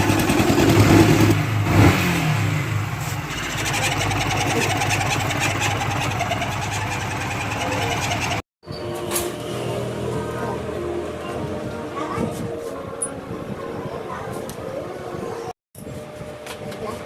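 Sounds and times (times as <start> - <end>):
motorcycle engine revving and idling: 0.0 - 8.4.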